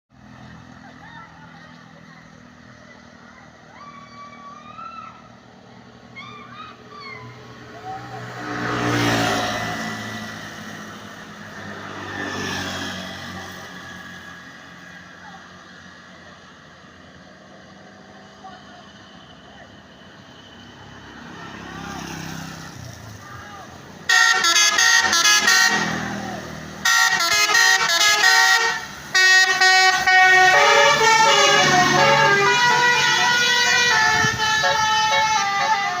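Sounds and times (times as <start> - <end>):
bus driving past: 0.1 - 36.0
musical air horn tunes: 24.1 - 26.0, 26.8 - 36.0.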